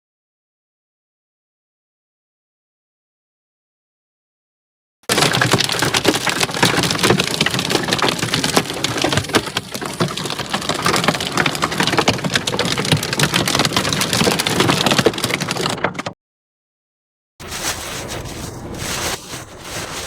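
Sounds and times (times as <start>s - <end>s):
heavy rain on hard surface: 5.1s - 15.8s, 17.4s - 20.0s.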